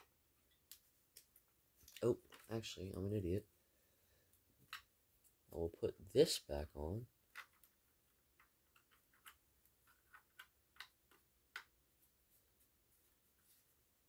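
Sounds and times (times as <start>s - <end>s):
plastic parts clicking and tapping: 7.3s - 11.8s.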